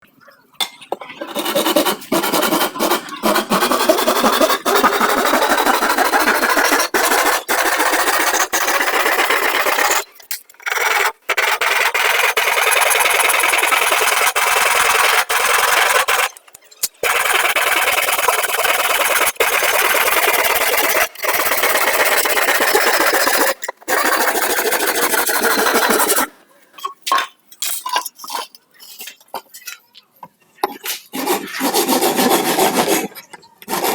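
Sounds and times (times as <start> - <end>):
rasping on wood: 1.3 - 10.0, 10.6 - 16.4, 17.0 - 26.2, 31.2 - 33.1, 33.7 - 33.9.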